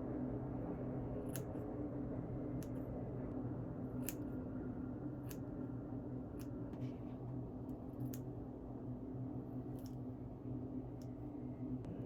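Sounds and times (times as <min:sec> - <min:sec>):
steady low hum: 0:00.0 - 0:12.0
scissors snipping hair: 0:01.2 - 0:01.6, 0:03.9 - 0:04.4, 0:05.2 - 0:05.6, 0:06.3 - 0:06.6, 0:07.8 - 0:08.3, 0:09.7 - 0:10.1.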